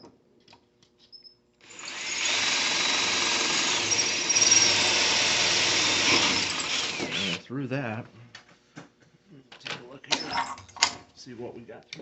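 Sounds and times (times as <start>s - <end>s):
electric drill cutting into steel: 1.6s - 7.4s.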